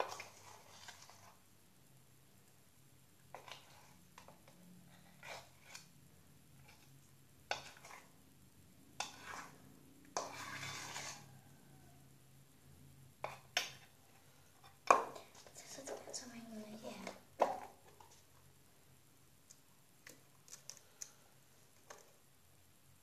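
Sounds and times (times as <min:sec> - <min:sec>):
scraping stir: 0:00.0 - 0:01.5, 0:03.2 - 0:08.2, 0:08.9 - 0:11.7, 0:13.2 - 0:18.4.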